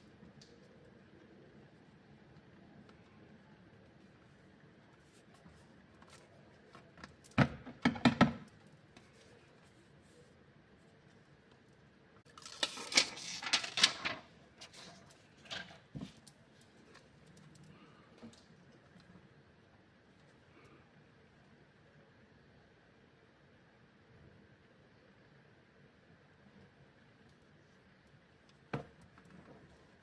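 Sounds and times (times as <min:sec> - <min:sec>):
packaging scraping and rustling: 0:12.3 - 0:15.8.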